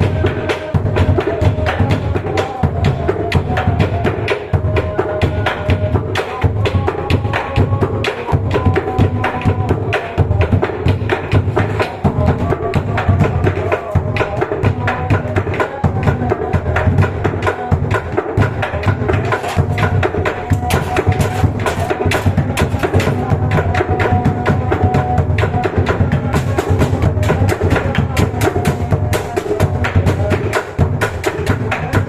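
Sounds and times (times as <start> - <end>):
large drums beaten fast: 0.0 - 32.0.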